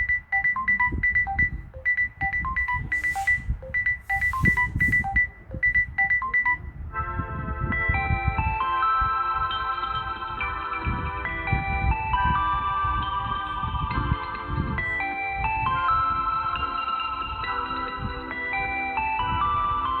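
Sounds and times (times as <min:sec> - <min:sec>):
high plucked ringtone notes: 0:00.0 - 0:06.7
chiming synth ringtone: 0:00.0 - 0:06.8, 0:07.9 - 0:20.0.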